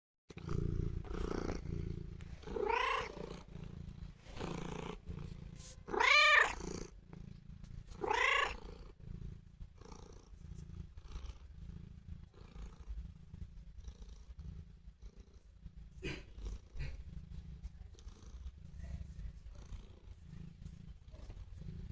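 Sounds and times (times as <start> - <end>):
cat purring: 0.3 - 21.9
cat calling: 2.4 - 3.2, 5.8 - 6.6, 8.0 - 8.6.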